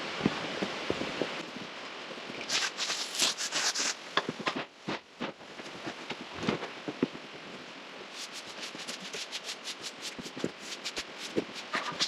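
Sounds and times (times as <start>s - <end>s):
rustling: 2.5s - 5.4s, 8.1s - 12.0s.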